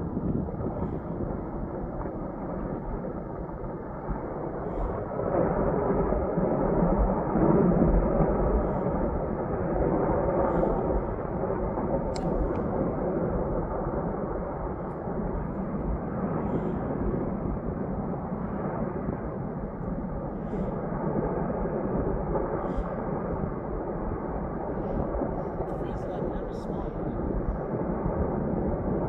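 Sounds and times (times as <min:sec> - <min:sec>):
avalanche low rumble: 0:00.0 - 0:29.0.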